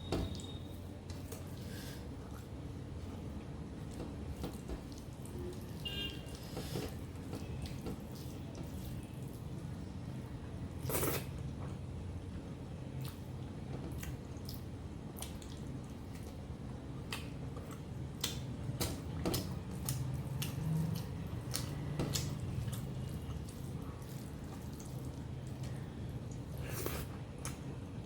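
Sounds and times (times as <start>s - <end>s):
wet chewing sounds: 3.8s - 9.8s, 13.0s - 18.5s, 19.1s - 27.7s.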